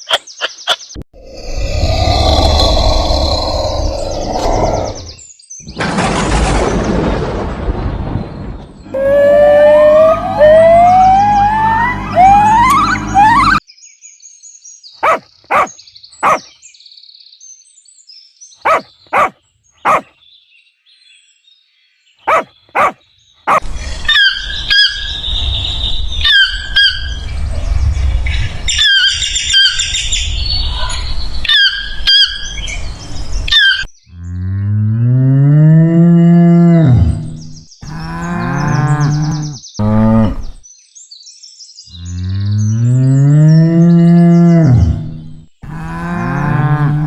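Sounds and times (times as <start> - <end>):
low rumbling: 1.2 - 13.6
high chirps: 8.9 - 13.6
cow mooing: 34.2 - 40.6, 42.0 - 47.0.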